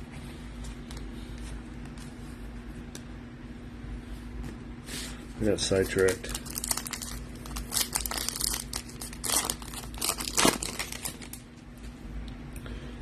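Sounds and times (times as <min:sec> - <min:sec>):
foil wrapper crinkling and tearing: 0:05.6 - 0:11.5.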